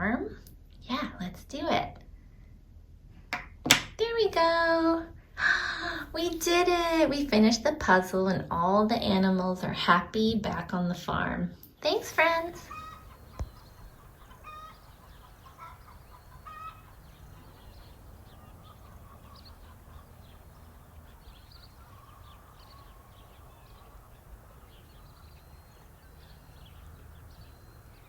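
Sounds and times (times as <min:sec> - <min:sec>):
low steady hum: 0:11.8 - 0:28.0
chickens clucking: 0:12.0 - 0:28.0
high bird chirps: 0:12.1 - 0:28.0.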